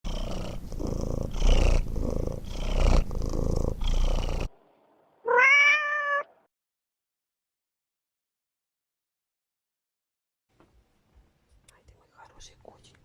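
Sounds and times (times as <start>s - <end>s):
cat purring: 0.0s - 4.6s
cat meowing: 5.3s - 6.3s.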